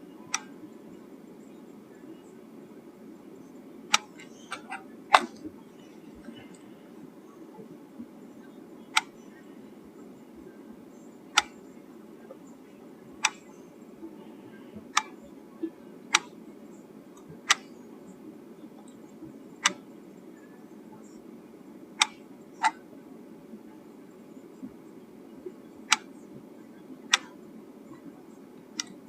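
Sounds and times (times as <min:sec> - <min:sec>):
steady low hum: 0:00.0 - 0:29.0
sharp clicks: 0:13.2 - 0:13.6, 0:19.6 - 0:19.8, 0:25.9 - 0:26.1, 0:28.8 - 0:29.0.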